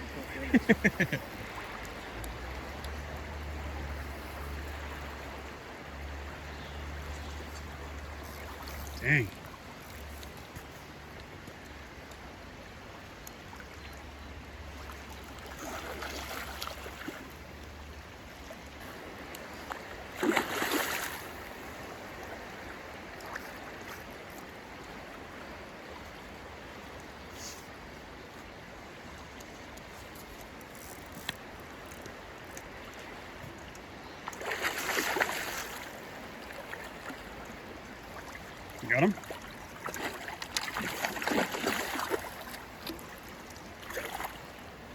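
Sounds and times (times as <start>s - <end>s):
river water flowing: 0.0s - 44.9s
splashes in water: 19.6s - 22.4s, 34.3s - 37.5s, 38.1s - 44.6s.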